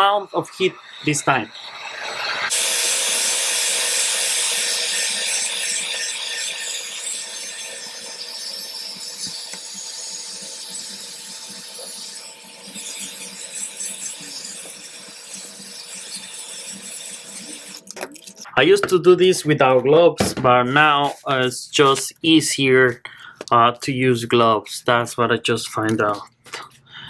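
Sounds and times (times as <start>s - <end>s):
heat gun blowing air: 2.5s - 7.3s.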